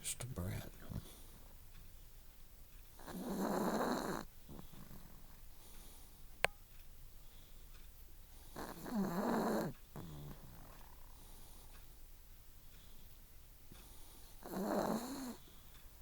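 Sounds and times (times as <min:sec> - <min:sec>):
dog snoring: 0:03.0 - 0:06.1, 0:08.3 - 0:11.7, 0:13.8 - 0:15.7.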